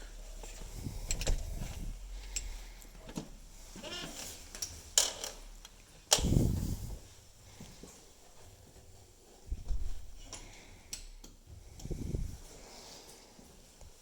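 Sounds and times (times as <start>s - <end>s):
thump with rustling: 9.5s - 10.1s.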